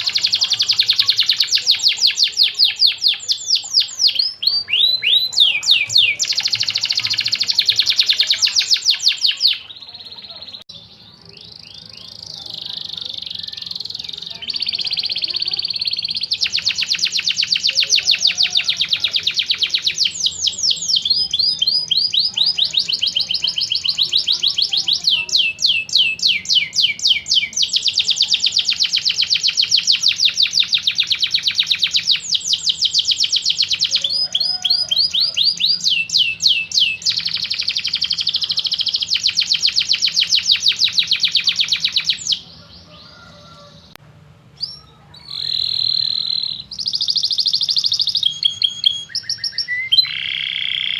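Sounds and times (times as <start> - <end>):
canary singing trills: 0.0 - 50.9.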